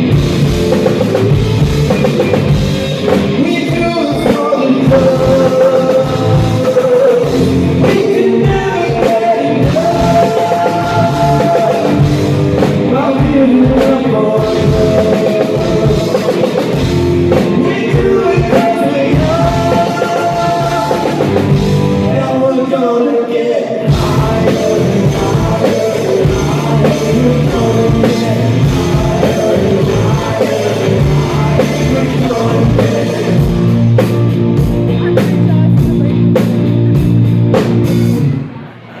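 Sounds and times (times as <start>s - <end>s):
live rock band playing: 0.0s - 22.4s, 23.9s - 39.0s
person singing: 3.1s - 34.0s.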